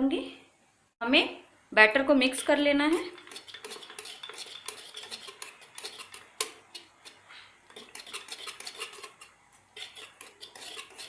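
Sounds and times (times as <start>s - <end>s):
batter being stirred: 2.3s - 11.0s
spoon scraping container: 2.4s - 11.0s.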